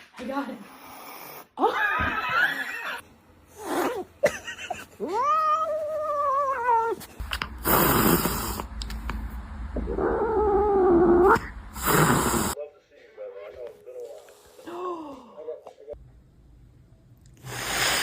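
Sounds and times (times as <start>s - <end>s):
cat hissing: 7.6s - 8.6s, 11.1s - 12.6s, 17.4s - 18.0s.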